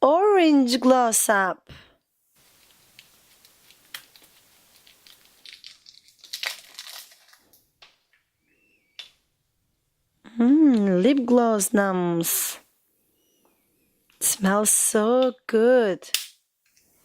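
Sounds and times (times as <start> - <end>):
plastic packaging rustling: 2.4 - 7.7.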